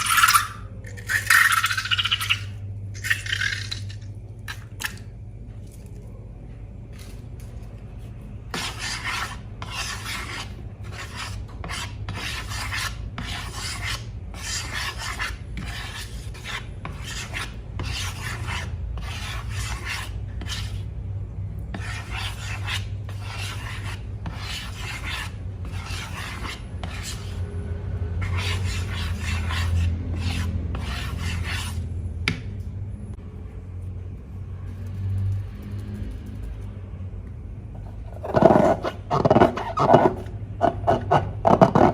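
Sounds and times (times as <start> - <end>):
steady low hum: 0.0 - 41.9.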